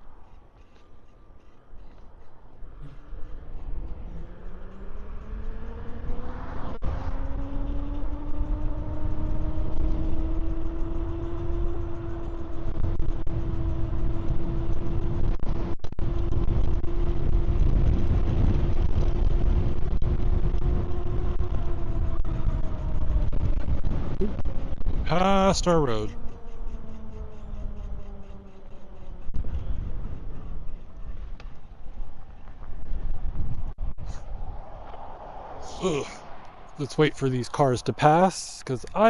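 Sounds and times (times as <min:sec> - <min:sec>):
wind and tyre rumble: 0:00.0 - 0:39.0.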